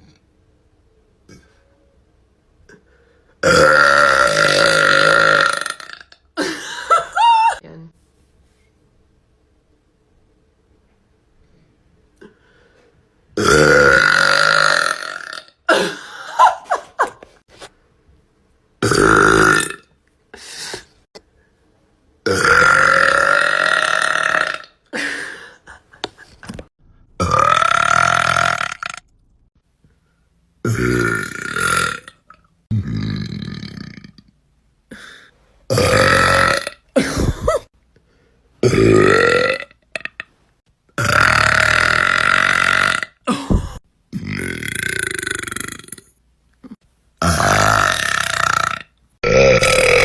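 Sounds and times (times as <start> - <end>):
woman burping loudly: 3.4 - 7.6, 13.4 - 16.6, 18.8 - 19.9, 22.2 - 25.2, 27.2 - 29.1, 30.6 - 34.2, 35.7 - 37.7, 38.6 - 40.3, 41.0 - 50.0.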